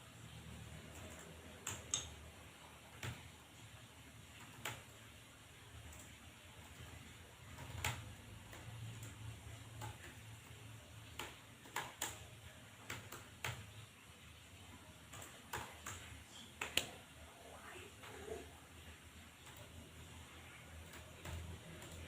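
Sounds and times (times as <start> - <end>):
low steady hum: 0.0 - 22.0
keyboard typing: 0.7 - 3.4, 4.3 - 5.1, 5.8 - 13.8, 14.7 - 17.1, 18.8 - 22.0.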